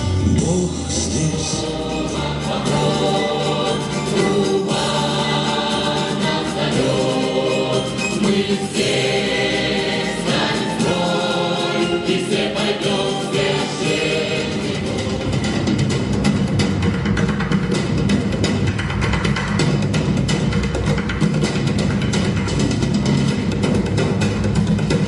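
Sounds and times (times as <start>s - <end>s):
instrumental accompaniment: 0.0s - 25.0s
choir singing patriotic song: 1.1s - 15.9s.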